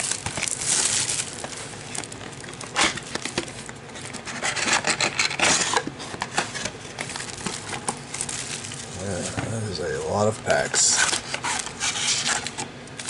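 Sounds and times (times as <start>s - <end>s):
cardboard rubbing and scraping: 10.8s - 12.6s.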